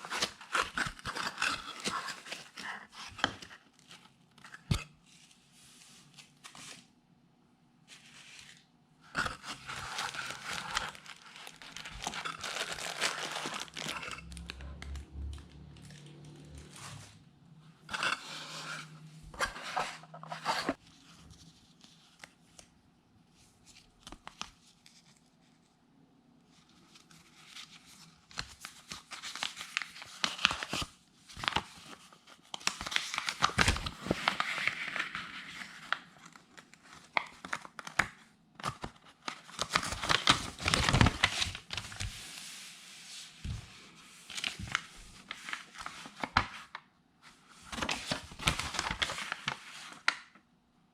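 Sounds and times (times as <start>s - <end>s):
packaging crinkling and tearing: 0.0s - 4.0s, 9.2s - 16.6s, 27.2s - 42.2s, 47.7s - 50.3s.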